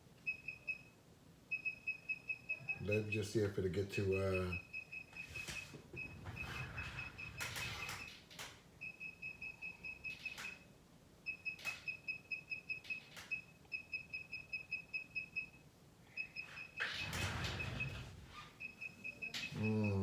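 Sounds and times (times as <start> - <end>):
rapid high electronic beeps: 4.2 - 8.1.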